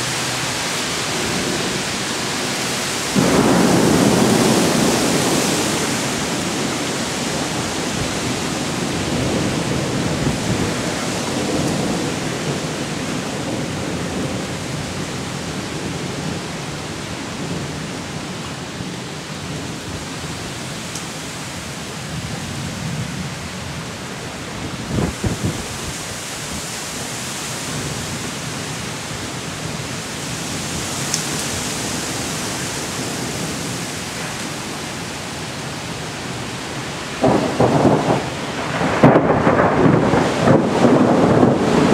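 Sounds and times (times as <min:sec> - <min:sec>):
thunder rumbling: 0:00.0 - 0:18.2, 0:24.6 - 0:26.6, 0:36.8 - 0:41.9
heavy rain: 0:00.0 - 0:41.9.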